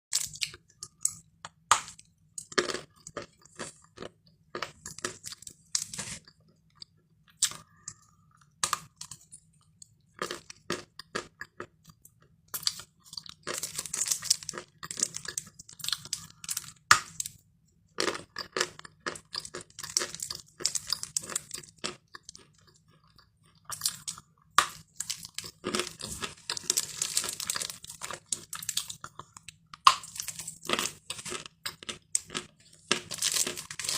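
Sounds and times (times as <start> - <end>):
chewing chalk crunching: 18.0 - 33.9.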